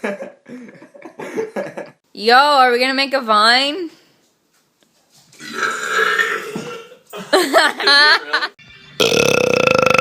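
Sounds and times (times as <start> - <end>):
person belching loudly: 5.4 - 7.0, 9.0 - 10.0.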